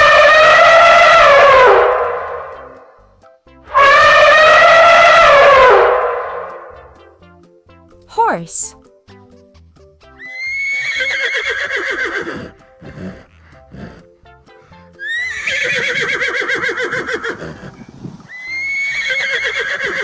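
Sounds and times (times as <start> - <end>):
horse whinnying: 3.7 - 6.9, 10.2 - 14.1, 15.0 - 20.0
light background music: 6.8 - 20.0.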